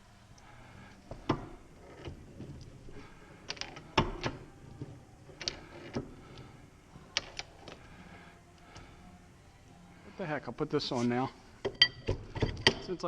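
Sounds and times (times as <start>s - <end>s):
metal parts clicking and knocking: 1.1s - 6.1s, 7.1s - 7.8s, 11.6s - 13.0s.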